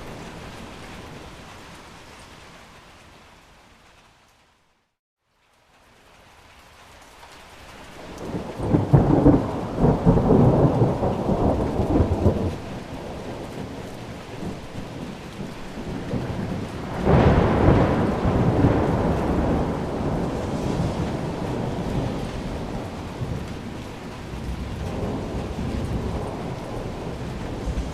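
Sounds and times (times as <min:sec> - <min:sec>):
heavy rain: 0:00.0 - 0:27.9
thunder rolling: 0:08.0 - 0:27.9.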